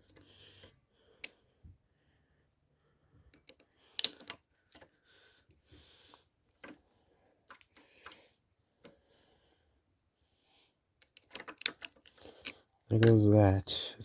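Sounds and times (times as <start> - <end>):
screwdriver clicking on padlock: 11.0 - 13.2.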